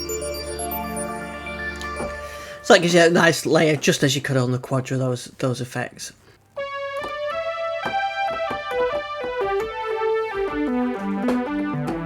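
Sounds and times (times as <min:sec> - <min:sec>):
synthesizer lead melody: 0:00.0 - 0:02.9, 0:06.6 - 0:12.0.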